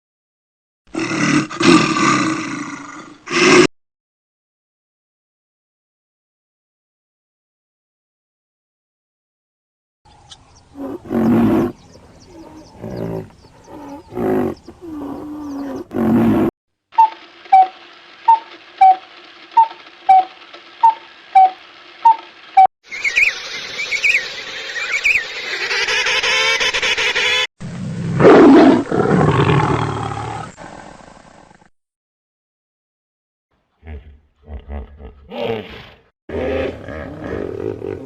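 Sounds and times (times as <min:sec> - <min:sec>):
loud animal call: 0:10.7 - 0:17.7, 0:22.9 - 0:27.5
pitched animal calls: 0:10.7 - 0:17.7, 0:23.0 - 0:27.5
chirps in dense noise: 0:22.9 - 0:27.2.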